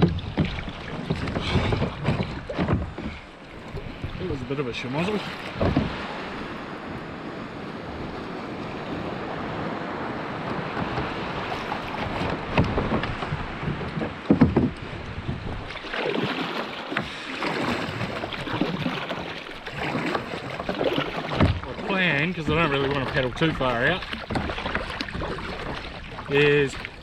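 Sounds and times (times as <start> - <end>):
water splashing around a kayak: 0.0 - 27.0
wind noise on microphone: 5.4 - 15.8.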